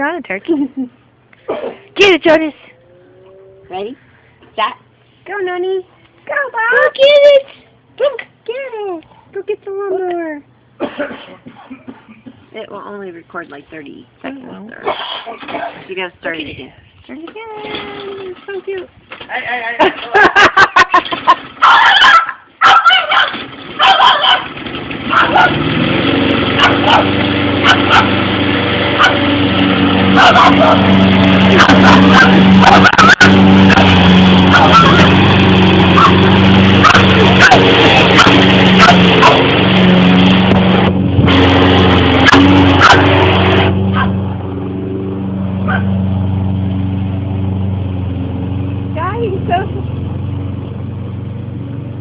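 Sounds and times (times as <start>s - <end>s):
lawn mower engine running: 19.8s - 52.0s
small dog yapping: 21.6s - 24.5s, 25.1s - 25.6s, 26.6s - 28.2s, 29.0s - 29.2s, 30.2s - 30.8s, 31.5s - 33.8s, 34.5s - 35.2s, 35.9s - 39.4s, 42.2s - 43.2s.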